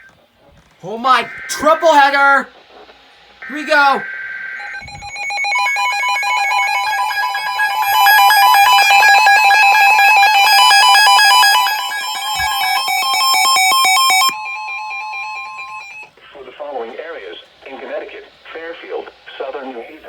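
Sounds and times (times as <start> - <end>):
electronic alert tones: 4.6 - 16.1.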